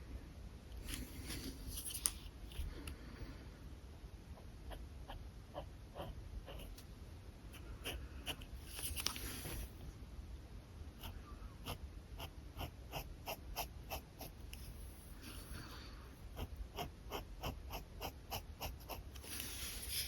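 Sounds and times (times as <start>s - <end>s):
pen scratching on paper: 7.5s - 9.7s, 11.0s - 14.4s, 16.3s - 20.0s.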